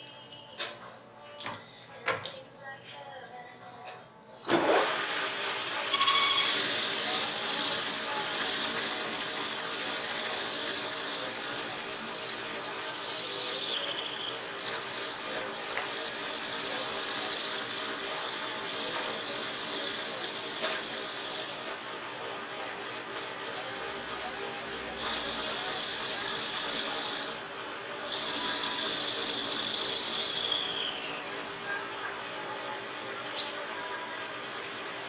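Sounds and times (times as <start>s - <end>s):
high-speed power tool whining: 4.6s - 31.8s
rough grinding noise: 5.6s - 31.8s.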